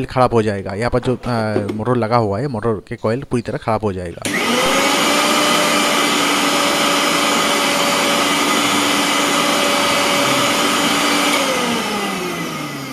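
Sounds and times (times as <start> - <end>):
mixer grinder motor whining: 1.0 - 1.9, 4.2 - 12.9.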